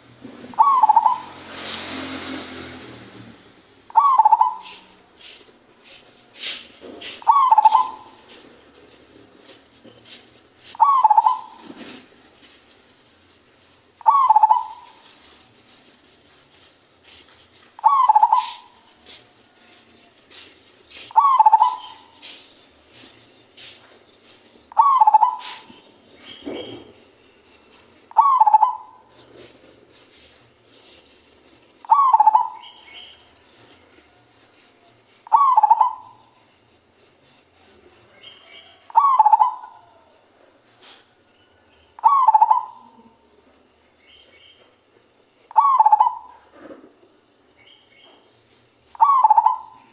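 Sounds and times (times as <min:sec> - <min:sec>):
dove cooing: 0:00.3 - 0:02.0, 0:03.9 - 0:04.9, 0:06.8 - 0:12.2, 0:14.0 - 0:15.4, 0:17.8 - 0:19.2, 0:20.9 - 0:22.4, 0:24.7 - 0:26.9, 0:28.1 - 0:29.6, 0:31.8 - 0:33.2, 0:35.2 - 0:36.4, 0:38.5 - 0:40.1, 0:42.0 - 0:43.2, 0:45.5 - 0:46.6, 0:49.0 - 0:49.9.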